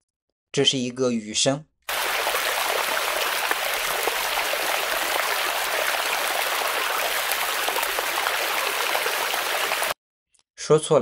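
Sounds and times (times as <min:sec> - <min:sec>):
running water with splashes: 0:01.9 - 0:10.0.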